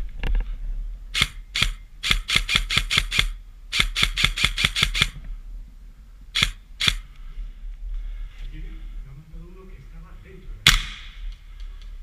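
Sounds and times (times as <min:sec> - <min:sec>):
airsoft gun firing rapid shots: 0:01.2 - 0:05.2, 0:06.4 - 0:07.0.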